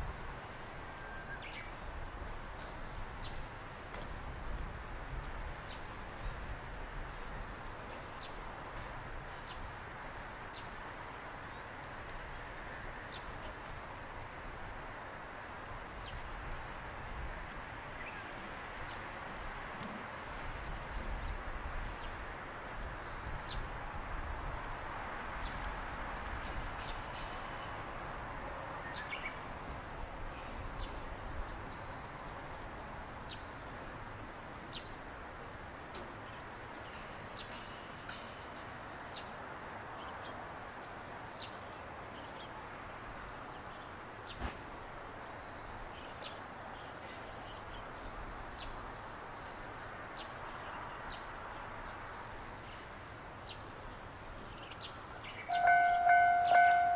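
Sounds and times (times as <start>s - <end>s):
background hiss: 0.0s - 56.9s
small birds chirping: 45.3s - 56.9s.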